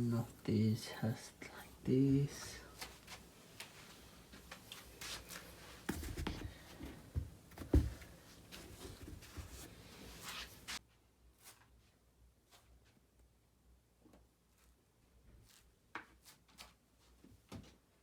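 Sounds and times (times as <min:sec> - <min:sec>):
background hiss: 0:00.0 - 0:13.2
sneakers rustling and knocking: 0:02.8 - 0:10.8
soft thumps: 0:05.9 - 0:09.6.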